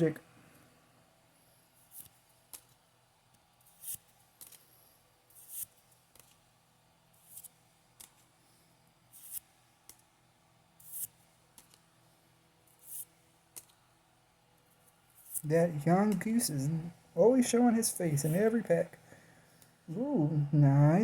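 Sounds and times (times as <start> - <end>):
trading cards swishing and flicking: 1.8 - 2.8, 3.6 - 6.5, 7.2 - 8.3, 9.1 - 10.0, 10.8 - 11.9, 12.7 - 13.8, 15.1 - 16.6, 18.2 - 18.7.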